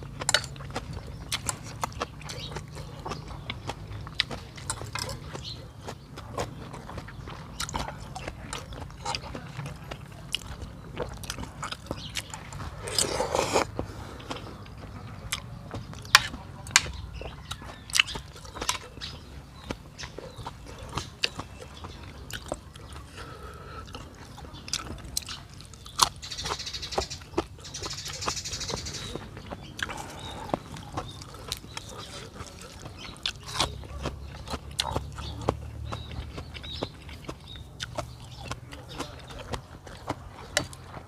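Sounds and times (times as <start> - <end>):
wet chewing and mouth clicks: 0.0 - 41.0
slurping noodles: 12.7 - 14.4.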